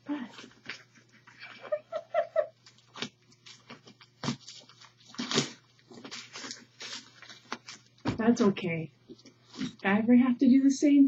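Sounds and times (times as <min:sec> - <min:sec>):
cling wrap crinkling: 0:02.6 - 0:09.9.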